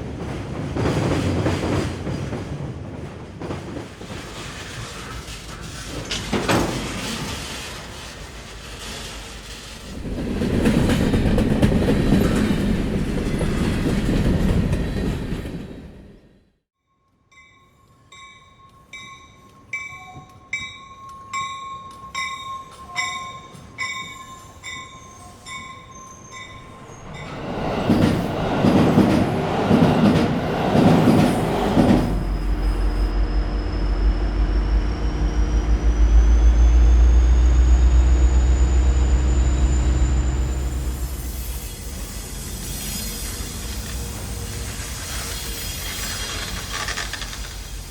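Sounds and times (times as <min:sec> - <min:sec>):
train rolling rumble: 0:00.0 - 0:16.4, 0:23.4 - 0:47.9
train motor hum with whine: 0:26.8 - 0:47.9.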